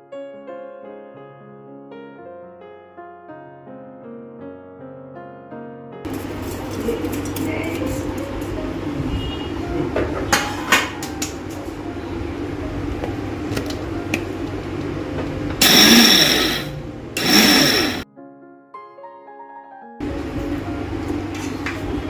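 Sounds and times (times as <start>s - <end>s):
piano-like background music: 0.0s - 15.6s, 16.7s - 17.2s, 18.0s - 22.0s
mixer grinder running: 15.5s - 18.0s.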